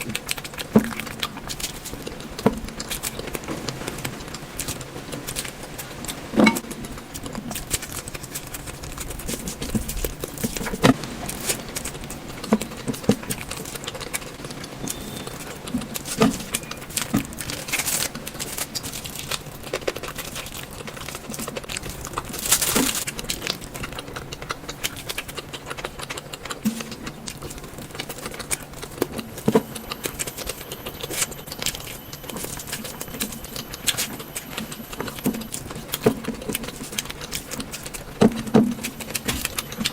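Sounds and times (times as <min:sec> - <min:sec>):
chewing: 0:00.0 - 0:39.9
loud noisy burst: 0:10.9 - 0:15.8.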